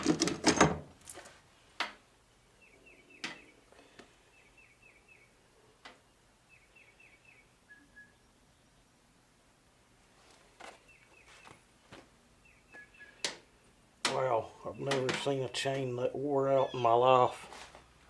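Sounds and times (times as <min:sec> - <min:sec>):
small bird chirping: 0:02.5 - 0:05.4, 0:12.4 - 0:15.1, 0:16.5 - 0:17.0.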